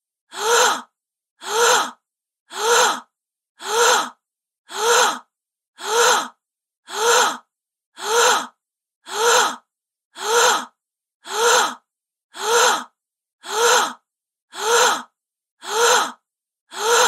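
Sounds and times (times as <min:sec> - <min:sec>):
woman gasping: 0:12.4 - 0:17.0.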